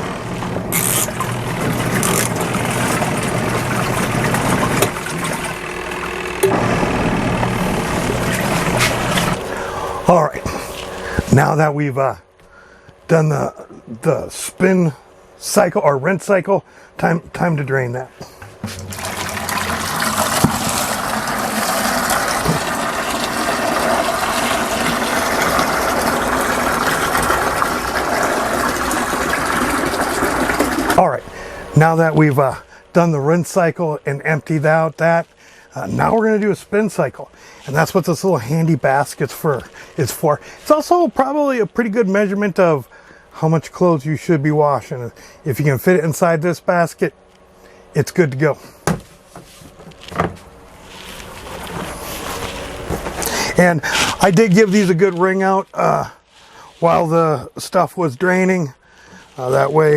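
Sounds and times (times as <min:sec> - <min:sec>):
water churning: 0:00.0 - 0:11.5, 0:18.8 - 0:32.4, 0:51.0 - 0:54.4
washing machine motor hum: 0:00.0 - 0:34.7, 0:50.0 - 0:54.6.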